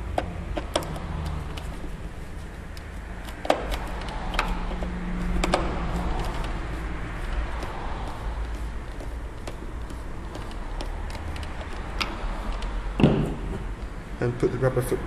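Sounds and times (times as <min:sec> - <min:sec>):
screwdriver clicking and tapping: 0:00.0 - 0:01.8, 0:02.7 - 0:06.7, 0:07.3 - 0:13.2.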